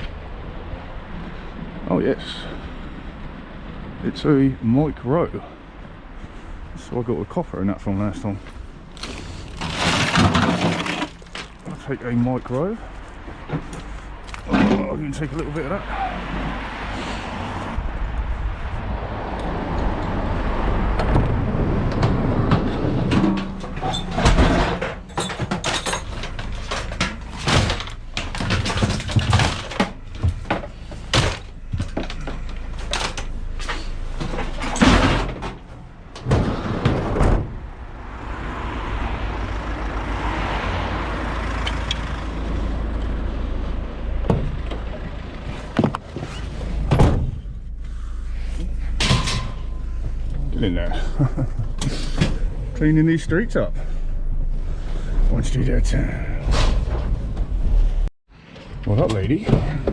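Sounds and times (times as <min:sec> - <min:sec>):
scrap metal knocks and clanks: 0:08.4 - 0:11.9, 0:22.0 - 0:37.6, 0:48.3 - 0:50.5
steady low rumble: 0:16.5 - 0:34.8, 0:41.8 - 0:58.1.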